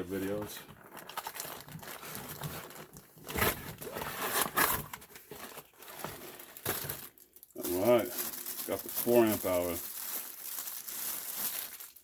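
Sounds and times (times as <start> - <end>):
packaging crinkling and tearing: 0.2 - 12.0.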